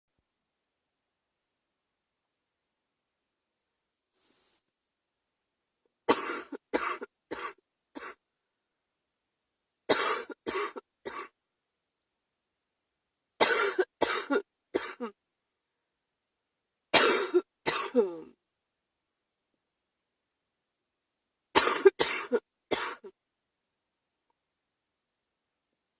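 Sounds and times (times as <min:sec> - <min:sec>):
person coughing harshly: 0:06.1 - 0:08.2, 0:09.9 - 0:11.4, 0:13.4 - 0:15.2, 0:17.0 - 0:18.3, 0:21.6 - 0:23.2.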